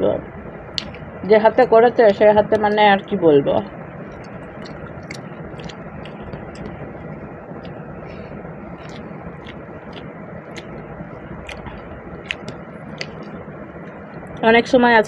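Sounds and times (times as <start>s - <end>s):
steady background noise: 0.0s - 15.0s
wet mouth clicks: 0.8s - 1.0s, 4.1s - 8.2s, 8.8s - 14.4s
person chewing food: 4.1s - 14.4s.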